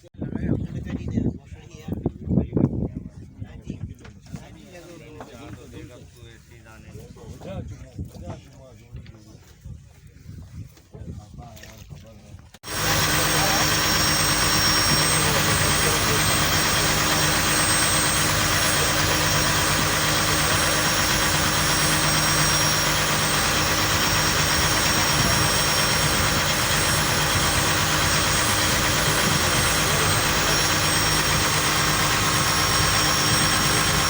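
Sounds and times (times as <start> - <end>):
boat engine droning: 12.6 - 34.0.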